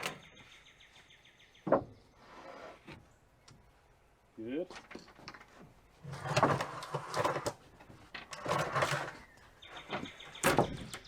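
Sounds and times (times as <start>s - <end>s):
wood scraping on wood: 1.7s - 3.2s, 4.7s - 11.0s.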